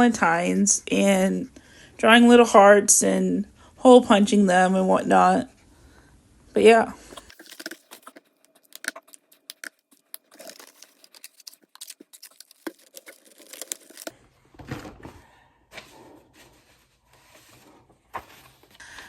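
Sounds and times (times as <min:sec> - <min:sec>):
paper cards rustling: 0:07.2 - 0:14.1.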